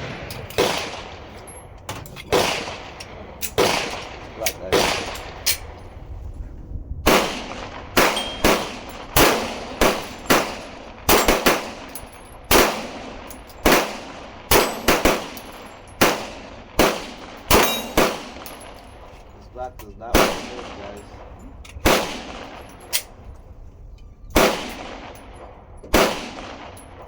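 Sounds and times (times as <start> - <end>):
pistol shots: 0.0 - 5.8, 7.0 - 18.8, 20.1 - 21.2, 21.8 - 23.2, 24.3 - 27.0
ringing steel targets: 7.6 - 23.4.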